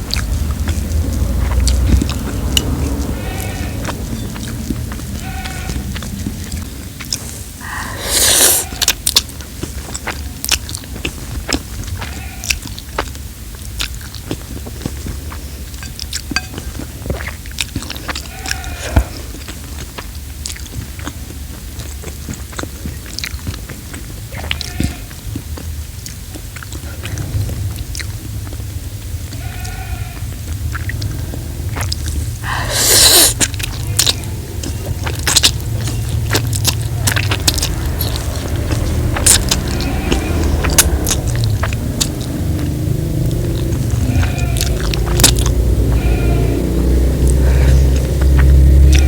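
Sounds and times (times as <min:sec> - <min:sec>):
wet chewing and mouth clicks: 0:00.0 - 0:49.0.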